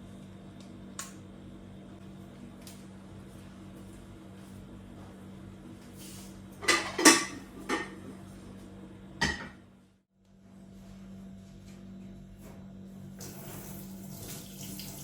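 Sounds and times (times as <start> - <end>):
kitchenware clinking and knocking: 9.2 - 9.6.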